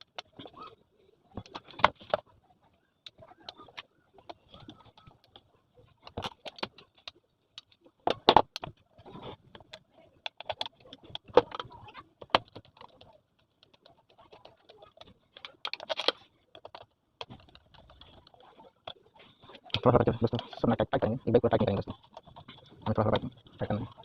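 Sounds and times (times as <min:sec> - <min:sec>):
metal fan parts clicking and knocking: 0:09.5 - 0:24.0.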